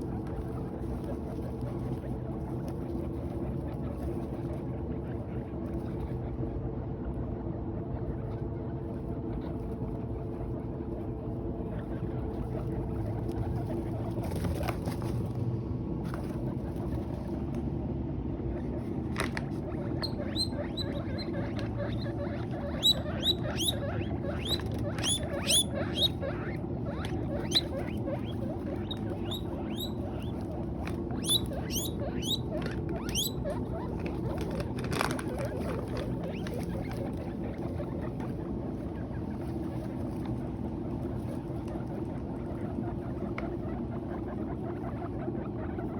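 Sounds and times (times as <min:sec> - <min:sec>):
guinea pig high squeaks: 0:00.0 - 0:15.4, 0:16.0 - 0:45.9
guinea pigs chewing hay: 0:00.0 - 0:45.9.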